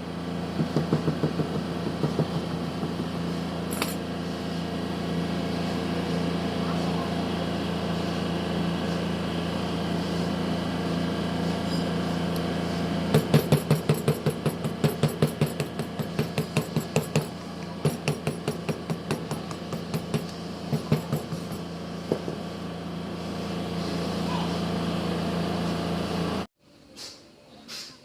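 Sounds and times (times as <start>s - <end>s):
motor running: 0.0s - 26.5s.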